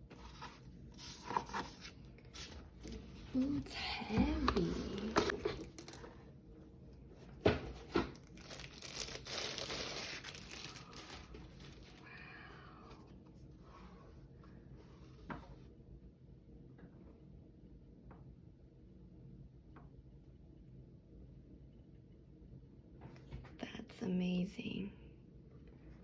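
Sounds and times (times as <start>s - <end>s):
packaging crinkling: 8.1s - 12.1s.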